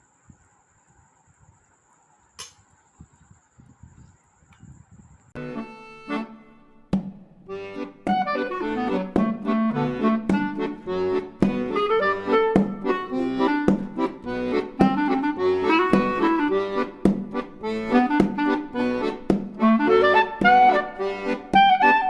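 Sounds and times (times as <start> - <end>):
accordion-like reed melody: 5.4 - 22.0.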